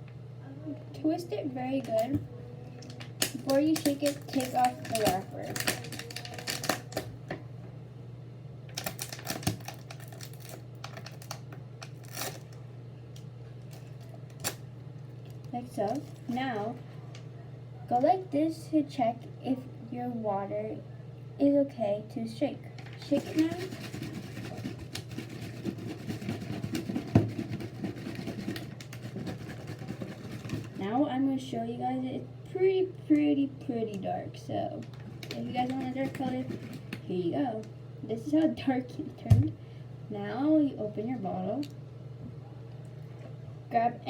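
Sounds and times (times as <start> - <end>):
steady low hum: 0.0 - 44.0
plastic wrapper crinkling: 2.8 - 7.1, 8.7 - 12.6, 13.6 - 16.4, 34.8 - 37.0
water sloshing in a bottle: 34.8 - 37.1.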